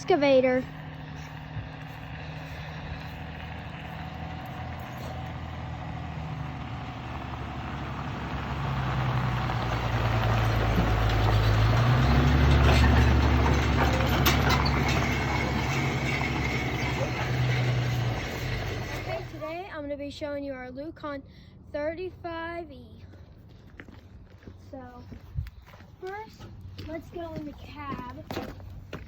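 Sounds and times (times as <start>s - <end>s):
heavy machine diesel engine: 0.0s - 19.8s
metallic clanks: 10.4s - 19.4s.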